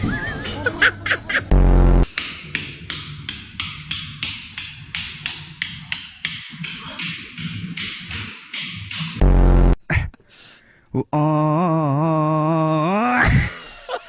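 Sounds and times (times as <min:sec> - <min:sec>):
sharp ticks: 0:02.0 - 0:09.3.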